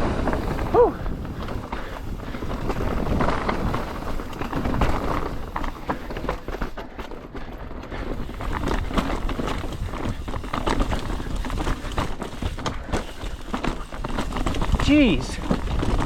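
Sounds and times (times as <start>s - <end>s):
bike rattling and knocking: 0.0s - 16.0s
tyres rumbling over rock: 7.5s - 16.0s.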